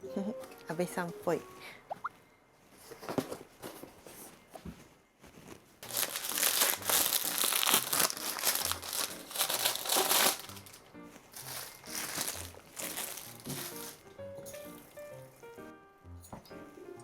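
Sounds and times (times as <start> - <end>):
food packaging crinkling: 5.2 - 14.2.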